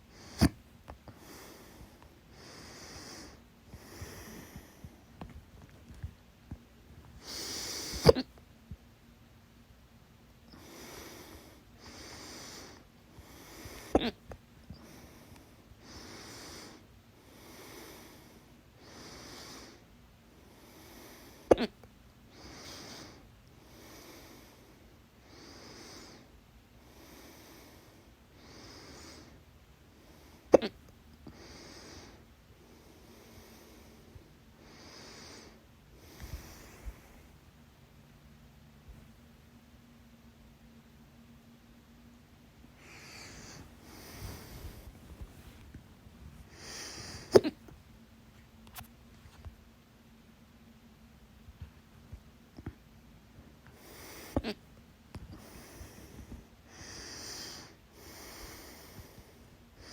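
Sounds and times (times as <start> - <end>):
woman breathing: 0.0 - 5.2, 10.5 - 21.5, 22.3 - 37.4, 42.7 - 47.6, 53.6 - 54.6, 55.3 - 59.9
woman hiccuping: 21.5 - 21.8.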